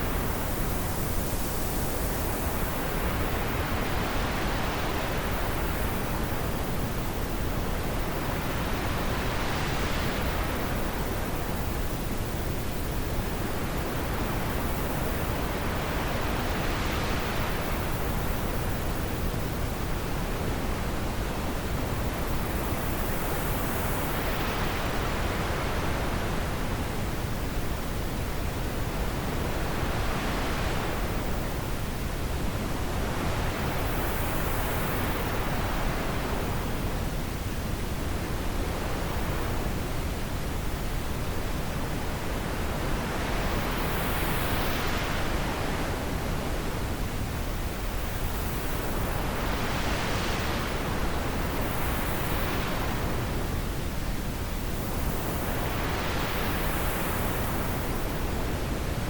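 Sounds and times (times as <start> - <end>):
gusting wind: 0.0 - 59.0.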